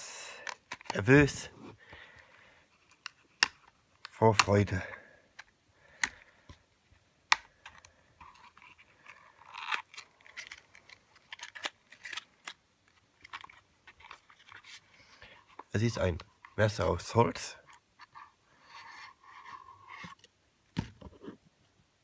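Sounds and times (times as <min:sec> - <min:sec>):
packaging rustling: 0:07.5 - 0:15.8.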